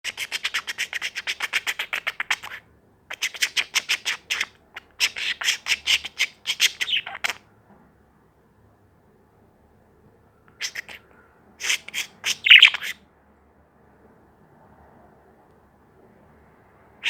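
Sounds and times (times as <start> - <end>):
bird squawking harshly: 0.1 - 7.4, 10.6 - 11.0, 11.6 - 13.0.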